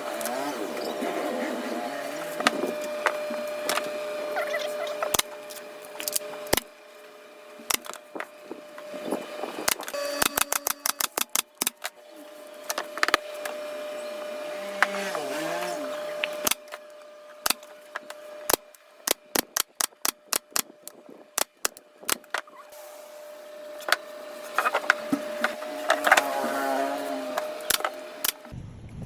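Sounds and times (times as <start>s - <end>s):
steady tone: 8.8s - 11.4s.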